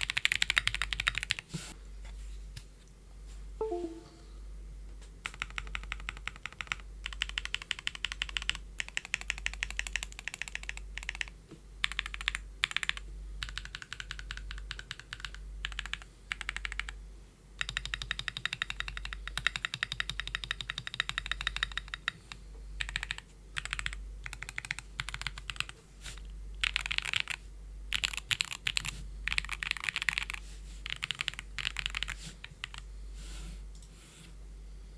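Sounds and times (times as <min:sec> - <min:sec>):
mechanical keyboard typing: 0:00.0 - 0:01.4, 0:05.2 - 0:17.0, 0:17.6 - 0:22.2, 0:22.8 - 0:25.8, 0:26.6 - 0:32.9.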